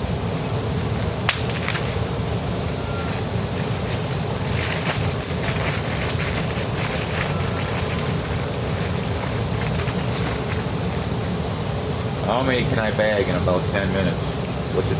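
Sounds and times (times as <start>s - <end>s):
plastic bags crinkling: 0.7s - 2.1s, 2.7s - 11.2s.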